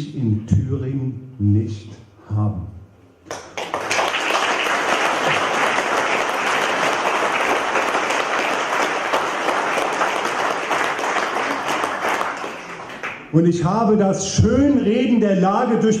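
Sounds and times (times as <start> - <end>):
audience applauding: 3.3 - 13.3.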